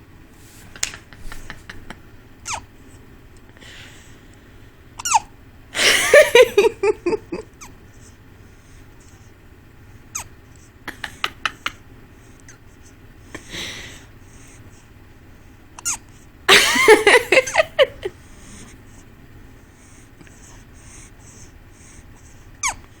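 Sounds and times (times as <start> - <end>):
baby hiccuping: 5.0 - 5.3.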